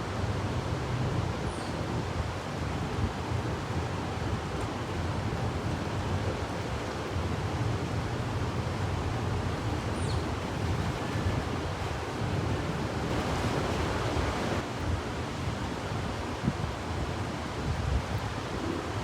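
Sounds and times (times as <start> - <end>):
storm wind buffeting microphone: 12.2 - 14.7.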